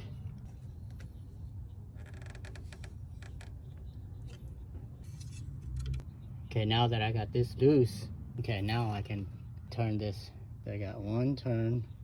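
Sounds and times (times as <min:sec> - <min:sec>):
wrench metal creaks and clicks: 0:01.9 - 0:04.4.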